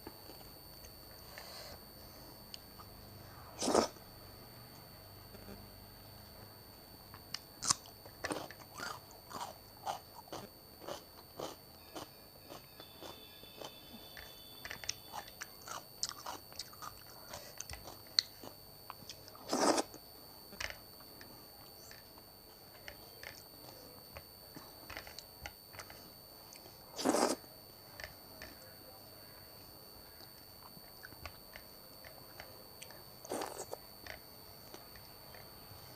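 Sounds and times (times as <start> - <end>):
food crunching: 7.1 - 27.4, 30.1 - 35.6
close chewing with wet mouth clicks: 7.6 - 20.0.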